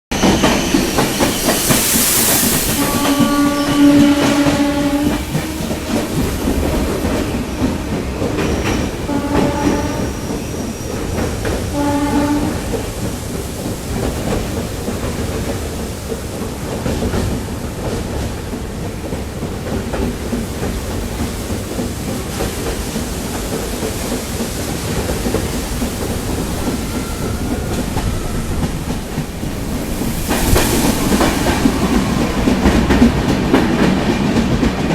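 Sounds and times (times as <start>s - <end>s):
train rumble and wheel clatter: 0.1s - 34.9s
train horn blasts: 2.7s - 6.6s, 9.1s - 10.4s, 11.7s - 12.8s.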